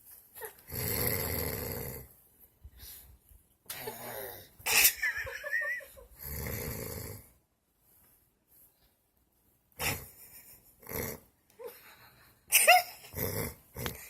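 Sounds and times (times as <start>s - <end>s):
heavy snoring: 0.7s - 2.1s, 6.2s - 7.3s, 10.8s - 11.3s, 13.1s - 14.0s.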